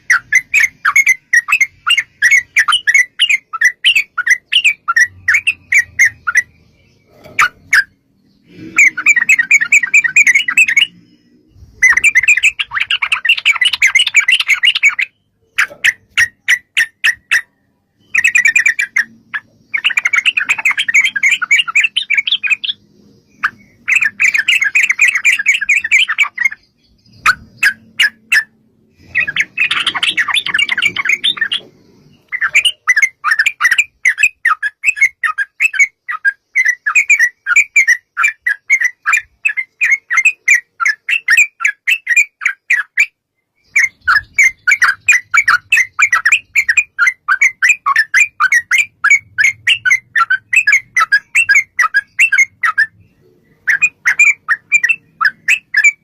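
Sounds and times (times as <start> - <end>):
bird chattering in rapid runs: 11.6 - 43.1, 43.7 - 53.0, 53.6 - 56.0.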